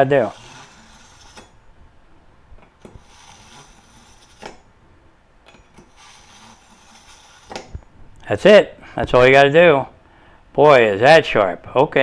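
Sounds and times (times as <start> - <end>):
knife scraping through sharpener: 0.0 - 1.6, 2.7 - 4.7, 5.5 - 7.8.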